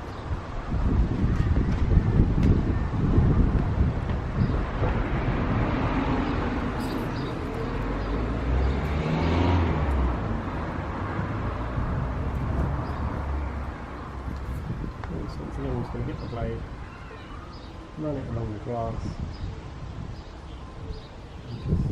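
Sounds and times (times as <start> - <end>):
vehicle passing: 4.5 - 16.8.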